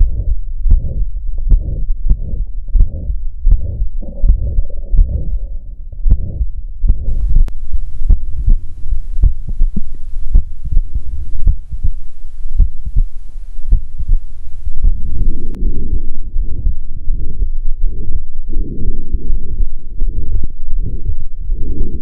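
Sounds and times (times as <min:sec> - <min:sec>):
low heartbeat sounds: 0:00.0 - 0:22.0
faint hiss: 0:07.1 - 0:15.6.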